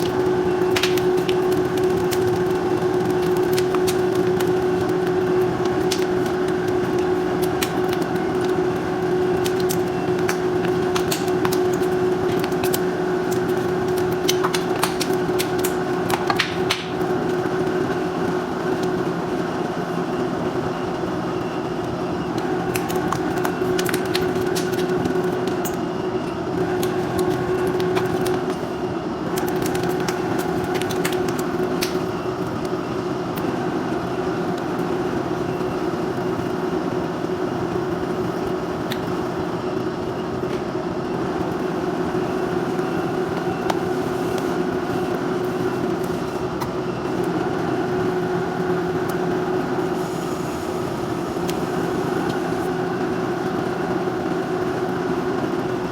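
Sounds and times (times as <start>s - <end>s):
mixing machine humming: 0.0s - 55.9s.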